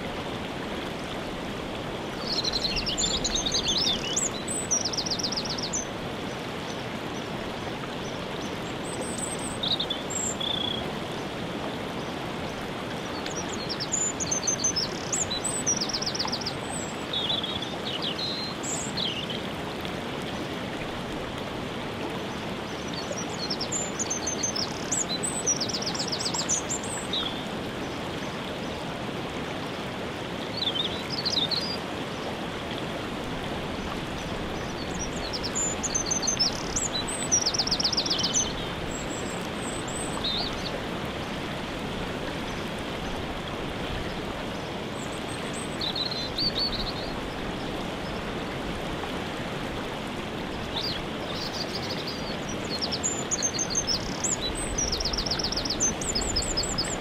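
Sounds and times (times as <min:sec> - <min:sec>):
waterfall rushing: 0:00.0 - 0:57.0
songbirds chirping and trilling: 0:02.2 - 0:06.0, 0:33.7 - 0:40.8, 0:50.6 - 0:57.0.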